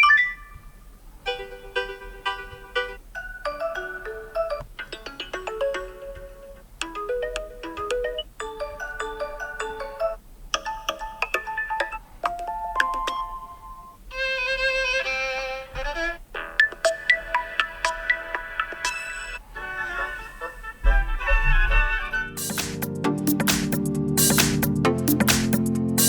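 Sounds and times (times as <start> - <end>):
smartphone ringtones: 0.0 - 6.2, 6.9 - 14.0.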